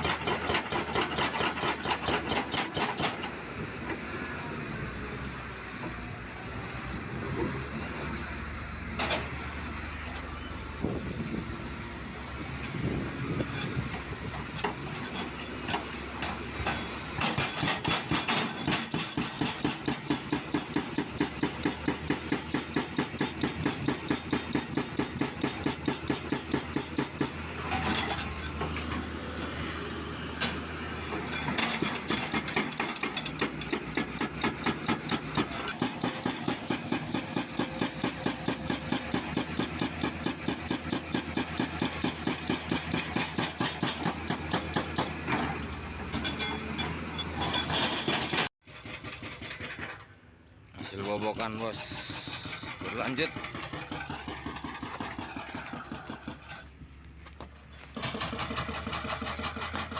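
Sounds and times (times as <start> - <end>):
hydraulic breaker hammer pounding concrete: 0.0 - 3.4, 15.7 - 28.3, 31.4 - 45.4, 47.5 - 50.1, 50.8 - 56.7, 57.9 - 59.9
diesel engine running: 51.6 - 59.9.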